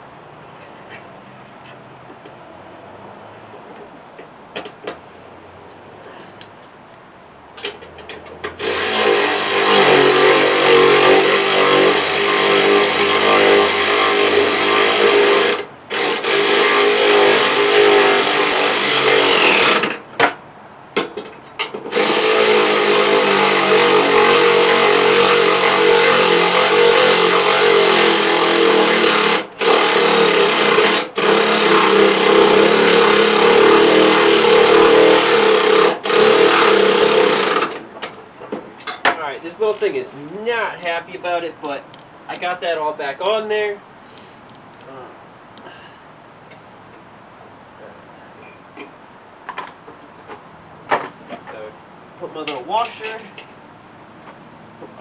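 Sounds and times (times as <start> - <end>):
power drill labouring: 8.6 - 20.0, 21.8 - 37.8.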